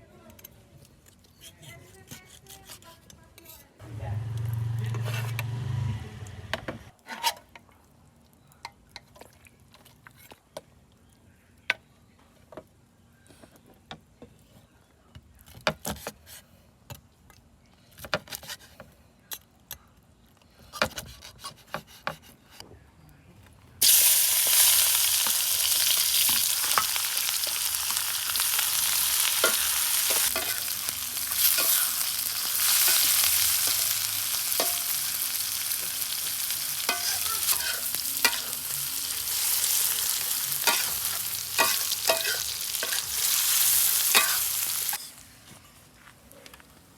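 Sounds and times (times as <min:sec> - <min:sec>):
food sizzling in hot oil: 0:23.8 - 0:45.2
kitchen utensils clinking: 0:23.8 - 0:45.2.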